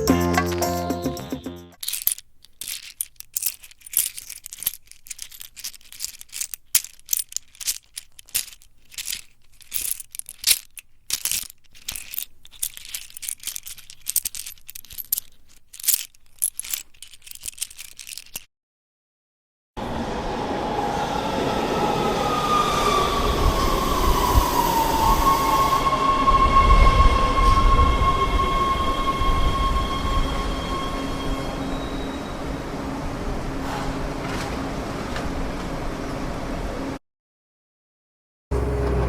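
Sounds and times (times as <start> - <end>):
small hard objects clattering: 1.8 - 18.5.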